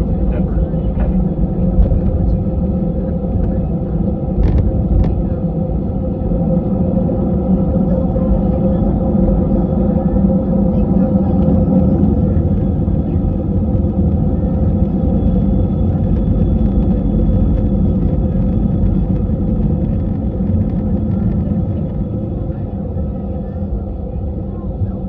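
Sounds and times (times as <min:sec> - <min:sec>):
airliner cabin rumble: 0:00.0 - 0:25.0.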